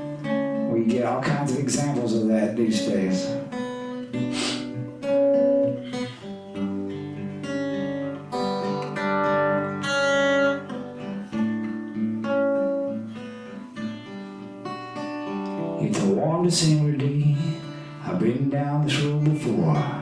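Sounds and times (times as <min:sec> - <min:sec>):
acoustic guitar strumming chords: 0:00.0 - 0:20.0.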